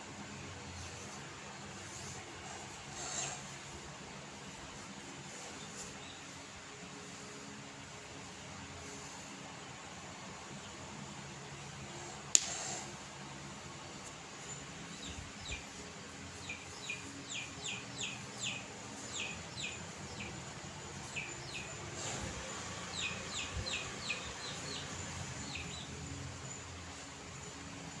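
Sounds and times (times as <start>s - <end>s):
bird chirping: 14.0s - 28.0s.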